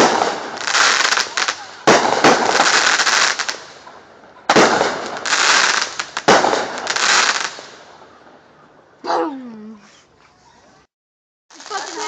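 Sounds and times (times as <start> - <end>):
fireworks bangs: 0.0 - 8.4, 11.5 - 12.0
fireworks crackling: 0.0 - 8.4, 11.5 - 12.0.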